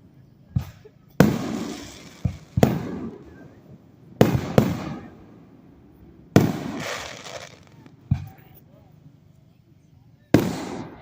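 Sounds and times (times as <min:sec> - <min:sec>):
fireworks bangs with rolling rumble: 0:00.4 - 0:08.5, 0:10.3 - 0:11.0.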